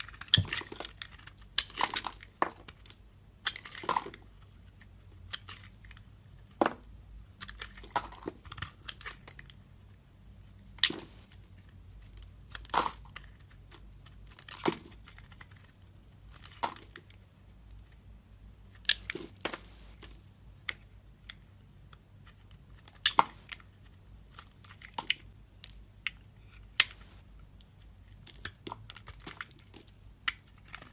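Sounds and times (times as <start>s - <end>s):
blade crunching through soap: 0.0s - 2.8s.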